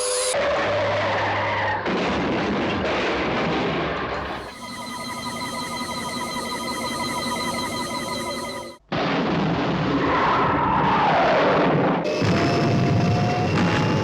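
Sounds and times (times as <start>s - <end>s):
pulsing electronic warble: 4.3s - 8.8s
falling electronic tone: 4.4s - 8.8s.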